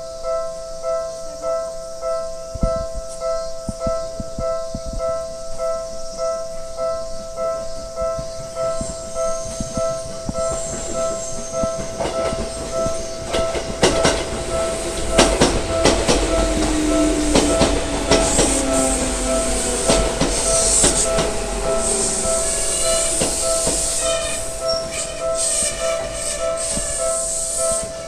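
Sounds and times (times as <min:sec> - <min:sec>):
low train whine: 0:00.0 - 0:28.0
level crossing warning bell: 0:04.5 - 0:28.0
train wheels clacking over rail joints: 0:08.7 - 0:28.0.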